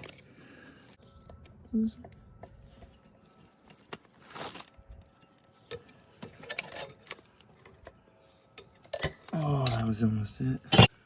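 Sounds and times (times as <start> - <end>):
pliers clicking and scraping metal: 10.7 - 10.9.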